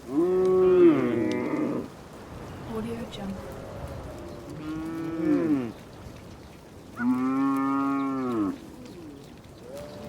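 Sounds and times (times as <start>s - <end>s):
cattle mooing: 4.5s - 5.8s, 7.0s - 8.6s.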